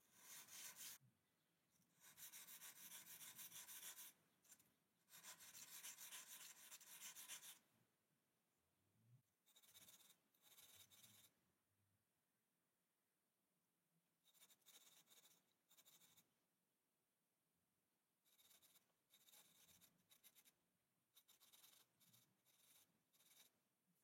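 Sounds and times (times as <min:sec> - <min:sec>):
faint scratching or rubbing: 0:00.0 - 0:01.0, 0:01.9 - 0:07.6, 0:09.5 - 0:11.3, 0:14.3 - 0:16.3, 0:18.2 - 0:20.6, 0:21.2 - 0:23.6.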